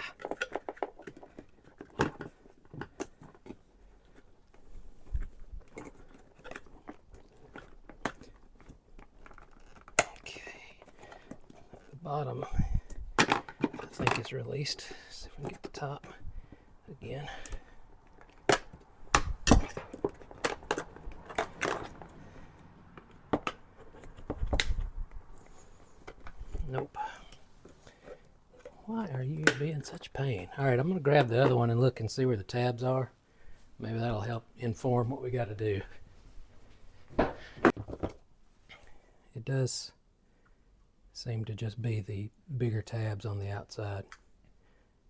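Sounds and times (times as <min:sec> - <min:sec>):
plastic clicking and scraping: 0:00.0 - 0:12.0, 0:17.4 - 0:28.8.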